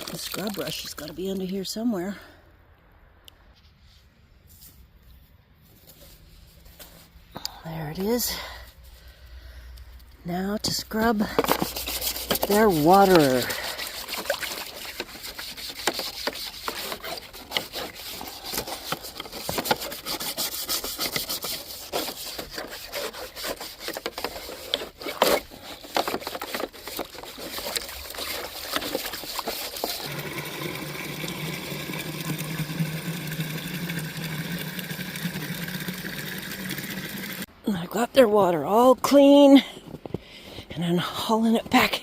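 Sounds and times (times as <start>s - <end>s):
scrub brush scrubbing: 10.6s - 30.4s.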